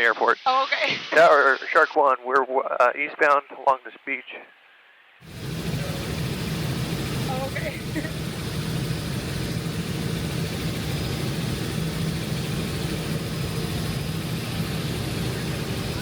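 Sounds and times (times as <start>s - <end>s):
helicopter engine and rotors droning: 5.2s - 16.0s.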